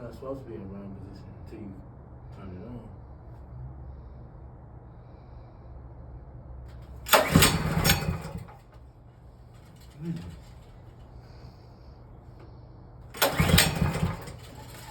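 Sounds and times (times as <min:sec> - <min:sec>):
generator engine cranking: 0:06.7 - 0:08.8, 0:09.5 - 0:11.4, 0:13.1 - 0:14.9
recoil starter pull: 0:06.7 - 0:08.8, 0:09.6 - 0:10.8, 0:13.1 - 0:14.9.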